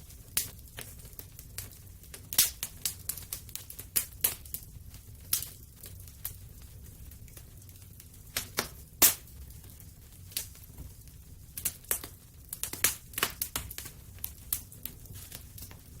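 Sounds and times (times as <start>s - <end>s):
low rumble of flames: 0.0s - 16.0s
wood fire crackling: 0.0s - 16.0s
sharp pops and snaps: 0.4s - 4.6s, 8.3s - 9.4s, 11.6s - 15.8s.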